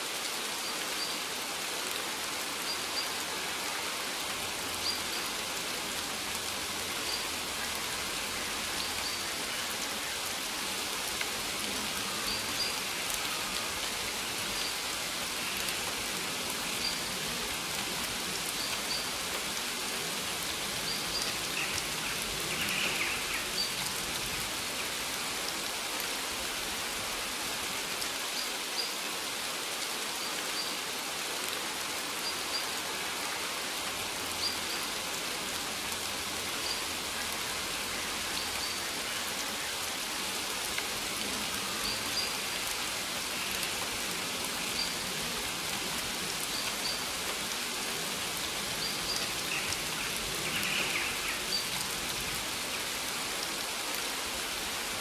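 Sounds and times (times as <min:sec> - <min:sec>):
rain falling on leaves: 0:00.0 - 0:55.0.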